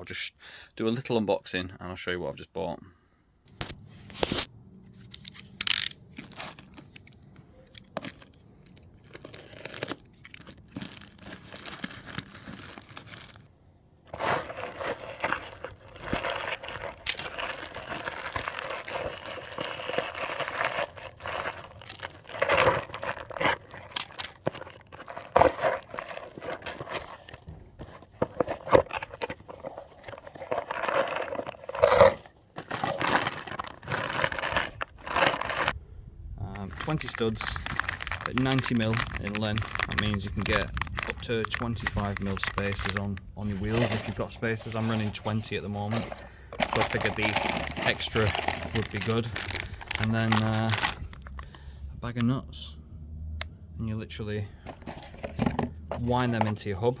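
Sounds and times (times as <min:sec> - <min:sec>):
packaging tearing and rustling: 0:05.2 - 0:07.0, 0:07.8 - 0:13.5, 0:14.1 - 0:35.7, 0:36.6 - 0:51.6
packaging crinkling: 0:07.8 - 0:35.7, 0:36.6 - 0:51.6.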